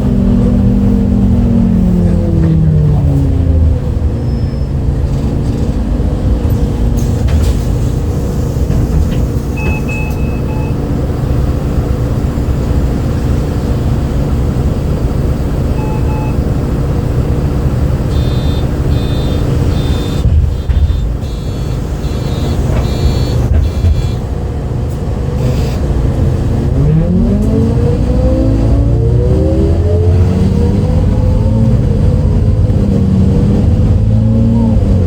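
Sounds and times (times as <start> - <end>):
bus diesel engine running: 0.0 - 35.0
short electronic beeps: 4.2 - 4.8, 9.5 - 10.8, 15.7 - 16.4, 18.1 - 24.2.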